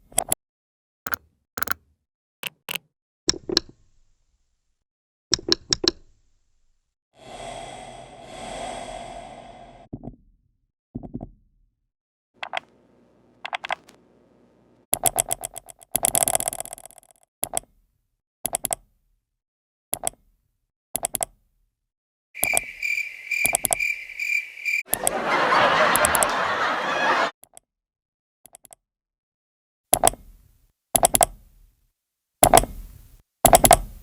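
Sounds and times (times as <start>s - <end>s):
computer mouse clicks: 1.1s - 1.8s, 2.4s - 3.7s, 12.4s - 12.7s, 13.4s - 14.0s, 14.9s - 17.7s, 18.5s - 18.8s, 20.0s - 20.2s, 21.0s - 21.3s, 23.4s - 23.8s, 28.5s - 28.8s, 33.5s - 33.9s.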